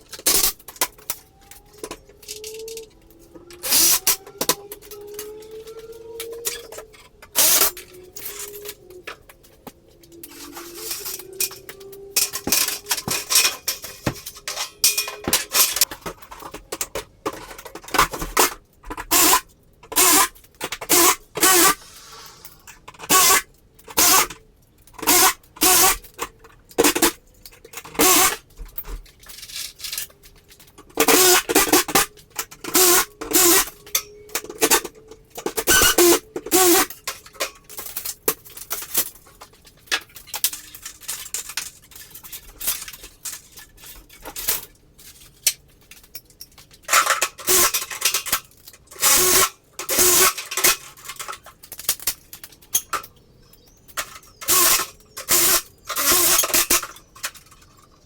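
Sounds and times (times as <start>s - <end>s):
metal clinking: 10.4s - 15.9s
power tool bursts: 20.9s - 23.4s.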